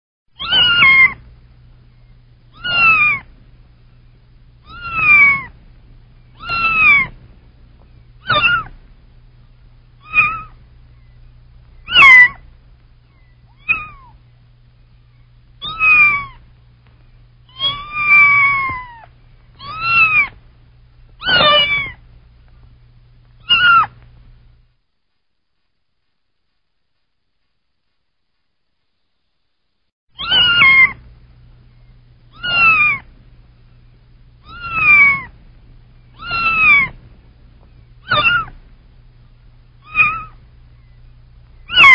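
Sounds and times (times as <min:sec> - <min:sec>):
faint low hum: 0:00.3 - 0:41.9
kitten meowing: 0:00.4 - 0:01.2, 0:02.5 - 0:03.3, 0:04.6 - 0:05.5, 0:06.3 - 0:07.1, 0:08.2 - 0:08.8, 0:10.0 - 0:10.6, 0:11.8 - 0:12.4, 0:13.1 - 0:14.2, 0:15.6 - 0:16.4, 0:17.5 - 0:20.4, 0:21.2 - 0:22.0, 0:23.4 - 0:24.0, 0:30.2 - 0:31.0, 0:32.3 - 0:33.1, 0:34.4 - 0:35.3, 0:36.1 - 0:37.0, 0:38.0 - 0:38.6, 0:39.8 - 0:40.4, 0:41.6 - 0:41.9.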